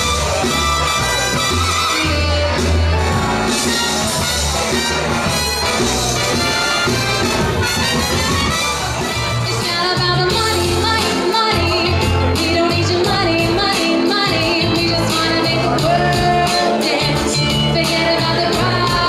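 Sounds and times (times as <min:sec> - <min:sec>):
loud pop music with beat: 0:00.0 - 0:19.0.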